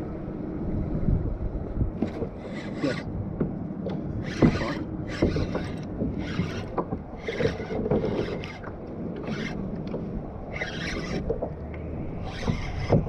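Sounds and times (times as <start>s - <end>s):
hull and gear knocks and creaks: 2.0s - 13.0s.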